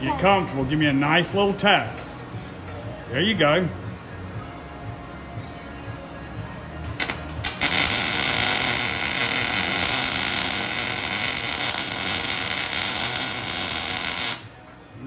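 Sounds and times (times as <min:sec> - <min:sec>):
welding arc crackling hiss: 0:06.9 - 0:14.5.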